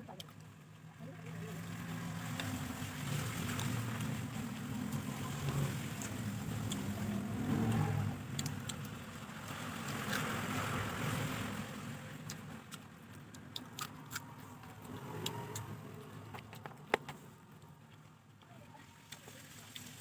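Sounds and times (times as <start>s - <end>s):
chewing: 4.9s - 11.3s, 12.1s - 20.0s.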